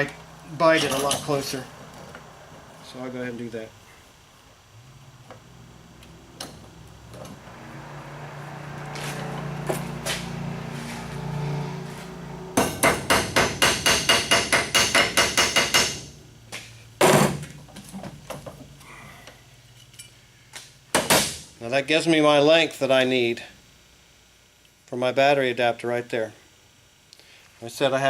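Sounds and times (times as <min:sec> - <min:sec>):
hammer striking steel: 0:12.6 - 0:16.1.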